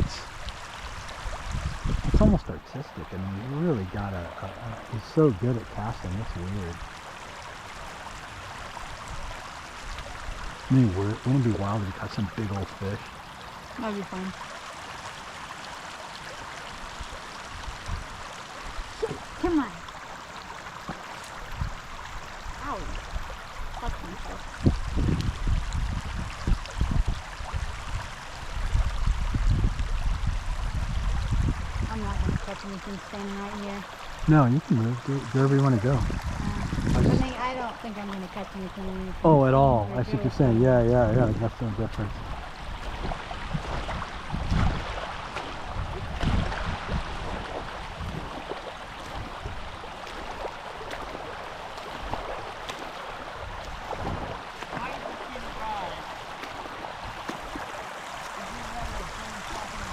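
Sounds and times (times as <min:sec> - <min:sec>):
low rumbles: 0:00.0 - 0:00.4, 0:01.4 - 0:06.9, 0:10.5 - 0:14.3, 0:28.9 - 0:48.4
river rushing: 0:00.0 - 0:29.2, 0:31.7 - 0:59.9.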